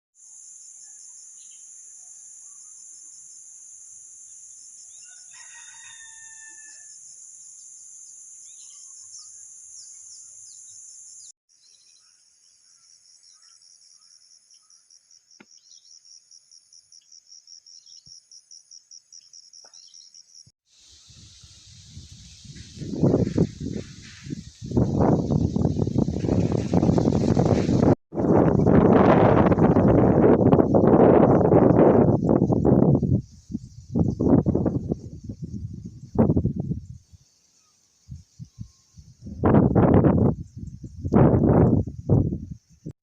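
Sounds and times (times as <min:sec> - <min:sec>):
insects droning: 0:00.2 - 0:42.9
insects pulsing trill: 0:00.2 - 0:42.9
rooster crowing: 0:05.0 - 0:07.0.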